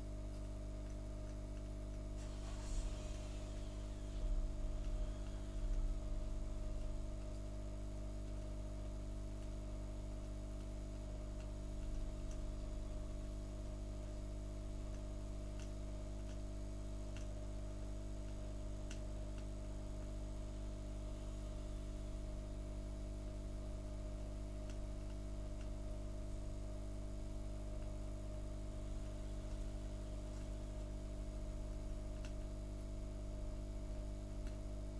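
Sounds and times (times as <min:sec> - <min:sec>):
low electrical hum: 0:00.0 - 0:34.9
faint ticks: 0:00.1 - 0:02.2.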